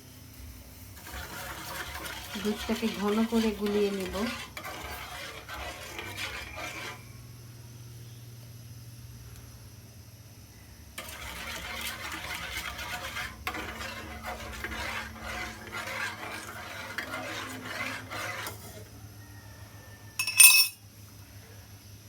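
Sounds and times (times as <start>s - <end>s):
spoon stirring in a pan: 0.7s - 7.2s, 11.0s - 19.0s, 20.2s - 20.8s.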